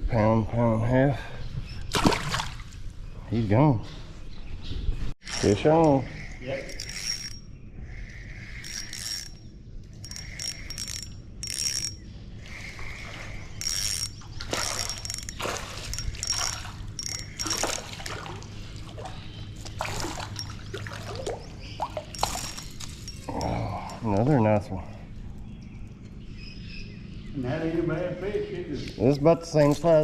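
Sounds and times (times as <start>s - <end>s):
water splashing: 1.9s - 2.8s, 14.4s - 23.1s
fishing reel cranking: 6.6s - 12.0s, 13.6s - 18.4s, 22.0s - 24.0s.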